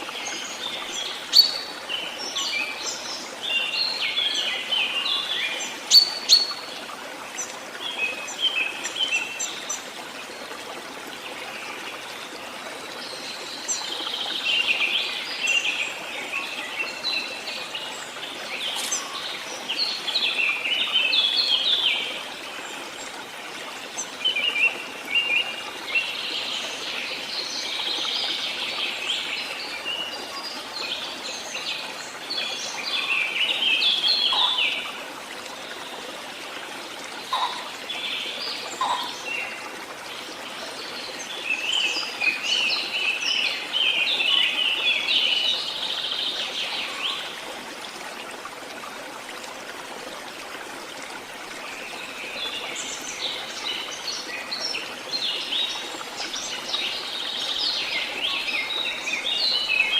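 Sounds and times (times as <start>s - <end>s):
songbirds twittering: 0.0s - 47.4s.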